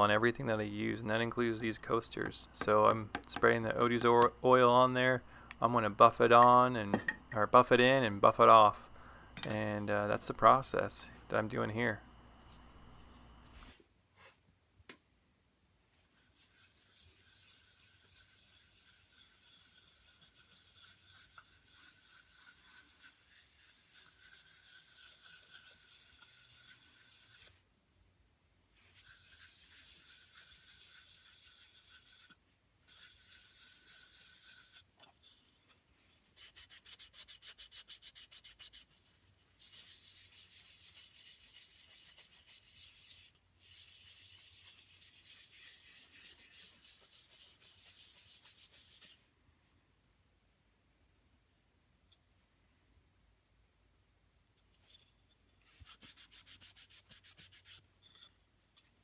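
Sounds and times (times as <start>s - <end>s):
hand scrubbing wood: 16.1s - 27.6s, 28.8s - 49.2s, 55.7s - 57.8s.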